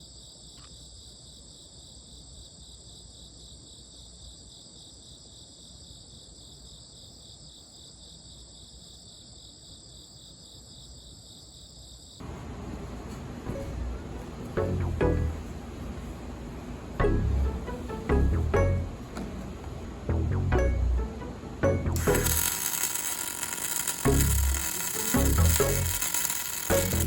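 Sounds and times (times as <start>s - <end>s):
crickets chirping: 0.0s - 12.4s
low background hum: 12.2s - 27.0s.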